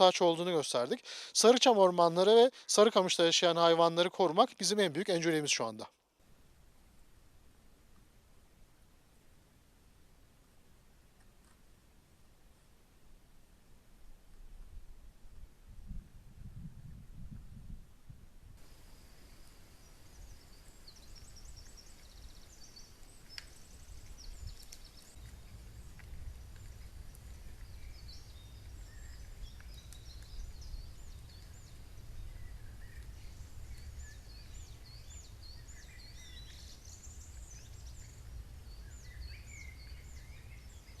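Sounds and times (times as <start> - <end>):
small birds chirping: 18.6 - 41.0.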